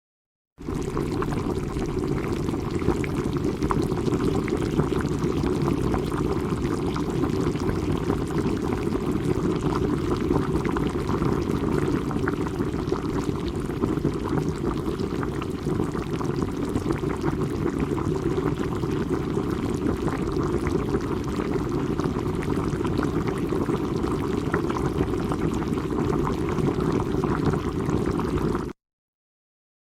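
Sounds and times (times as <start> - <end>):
water boiling and bubbling: 0.6 - 28.8.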